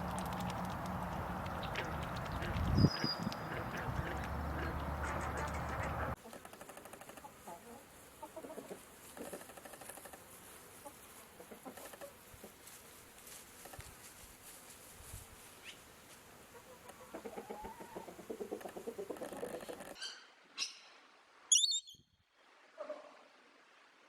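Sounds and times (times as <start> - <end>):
chickens clucking: 0.1 - 10.2, 10.8 - 12.7, 16.5 - 20.0.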